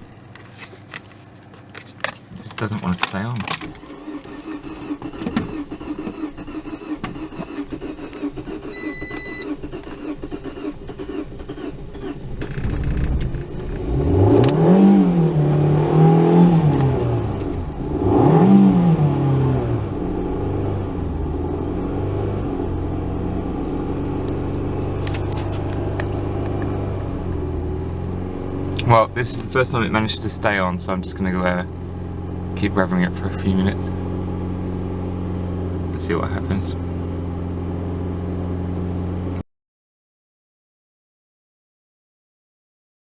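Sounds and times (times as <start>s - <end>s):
car engine running unevenly: 0.0s - 39.4s
engine revving: 3.8s - 39.4s
short electronic beep: 8.7s - 9.5s.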